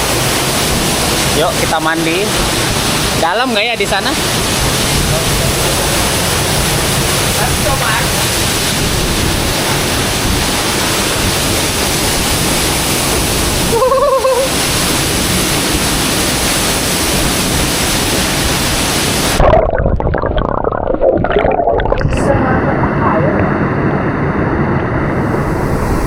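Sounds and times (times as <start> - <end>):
waterfall rushing: 0.0 - 19.7, 25.0 - 26.0
short voice-like call: 13.7 - 14.5.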